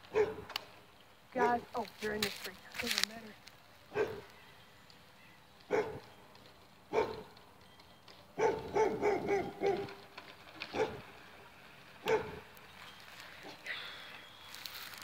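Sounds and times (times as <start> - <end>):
dog barking: 0.1 - 0.5, 3.9 - 4.2, 5.7 - 6.0, 6.9 - 7.3, 8.4 - 10.0, 10.7 - 11.0, 12.0 - 12.4.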